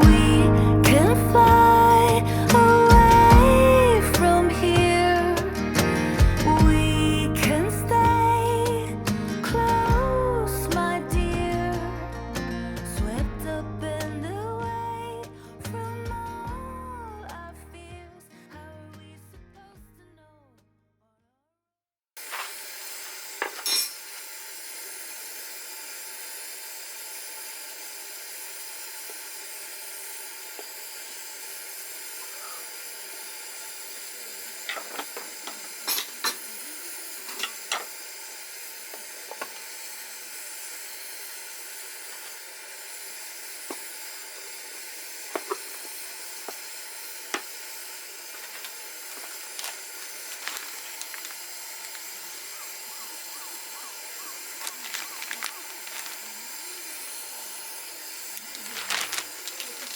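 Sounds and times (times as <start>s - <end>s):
steady hiss: 22.2s - 59.9s.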